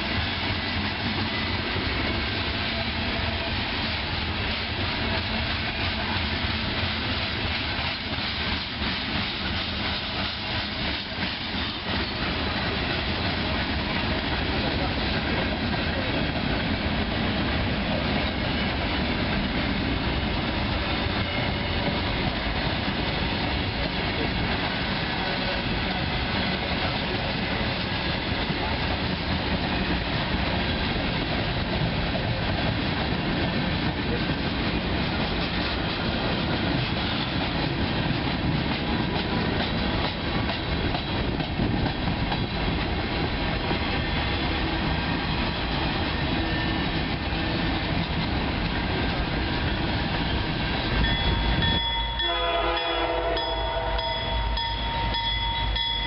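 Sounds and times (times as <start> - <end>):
train rumbling on rails: 0.0 - 56.0
train horn: 21.0 - 22.2, 51.7 - 56.0.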